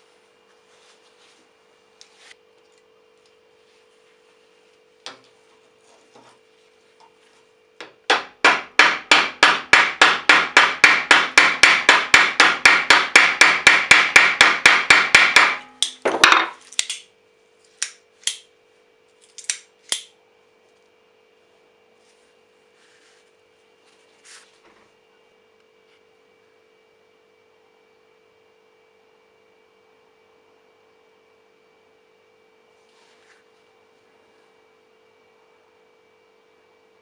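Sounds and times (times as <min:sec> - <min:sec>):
secateurs clicking open and shut: 0:16.7 - 0:17.1, 0:17.8 - 0:18.5, 0:19.2 - 0:20.1.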